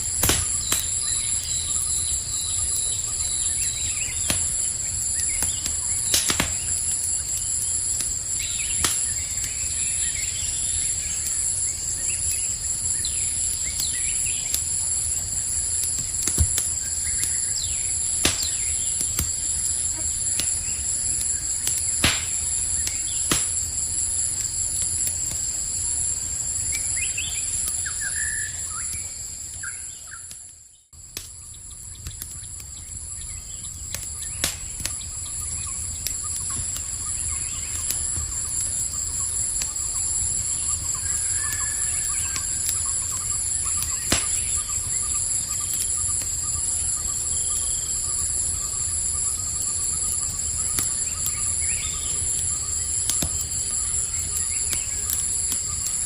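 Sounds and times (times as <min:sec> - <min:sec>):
campfire crackling and popping: 0:00.0 - 0:56.0
crickets chirping: 0:00.0 - 0:56.0
faint bird chirps: 0:26.4 - 0:52.9.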